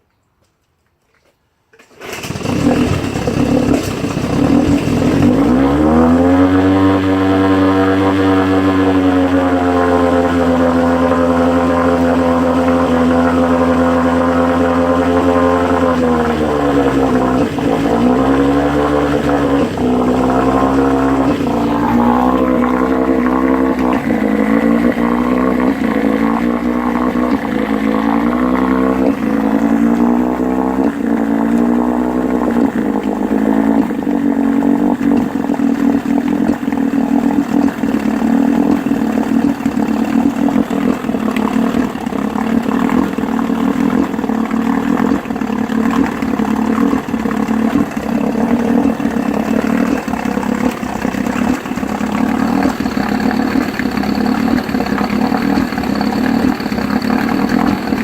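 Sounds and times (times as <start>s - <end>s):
engine coughing misfires: 1.9s - 34.0s
outboard motor running: 1.9s - 58.0s.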